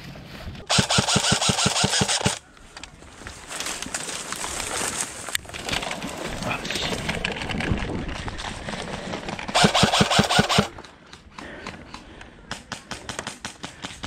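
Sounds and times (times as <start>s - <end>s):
airsoft gun rapid burst: 0.7s - 2.4s, 9.5s - 10.7s
rattle of automatic fire: 0.7s - 2.4s, 9.5s - 10.7s.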